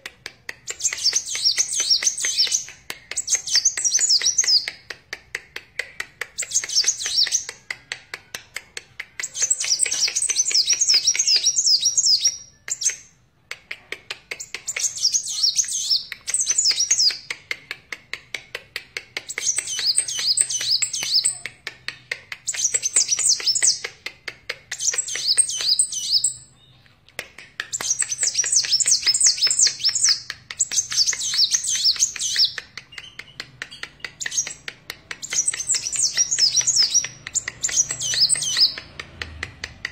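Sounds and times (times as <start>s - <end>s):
sunbird high twittering song: 35.2s - 38.8s.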